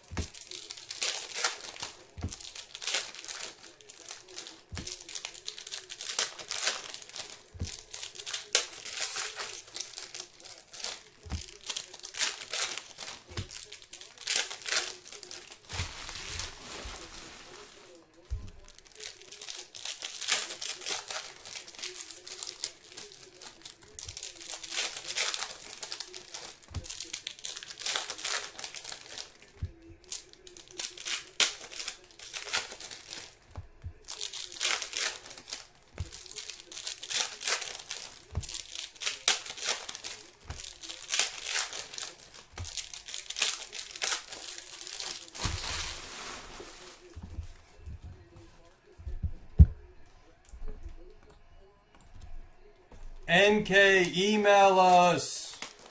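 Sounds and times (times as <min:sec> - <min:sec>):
card pack wrappers crinkling and tearing: 0:00.0 - 0:49.2, 0:52.8 - 0:55.9
soft thumps: 0:47.2 - 0:53.3.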